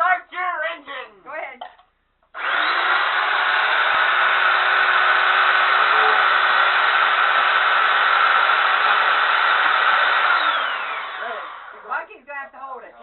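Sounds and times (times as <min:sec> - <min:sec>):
chainsaw running: 0:02.4 - 0:11.9.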